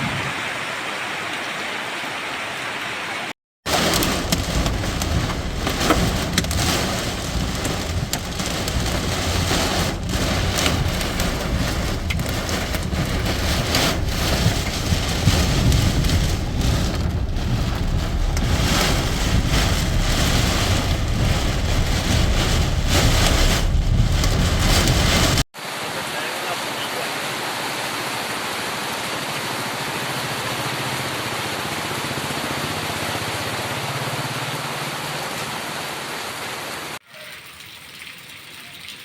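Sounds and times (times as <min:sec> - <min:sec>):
heavy rain pouring: 0:00.0 - 0:37.8
low rumble: 0:03.7 - 0:25.4.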